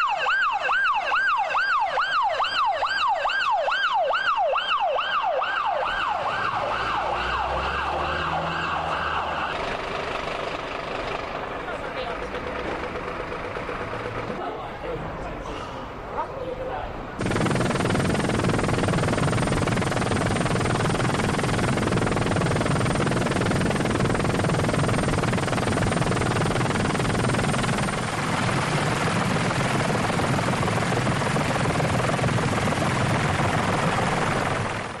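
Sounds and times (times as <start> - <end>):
helicopter rotor and engine: 8.7 - 14.4, 17.2 - 35.0.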